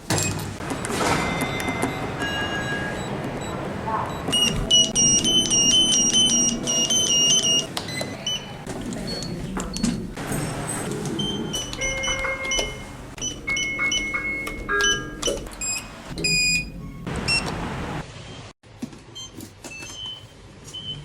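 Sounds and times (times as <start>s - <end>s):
elevator chime tones: 0.7s - 9.4s, 10.3s - 17.6s.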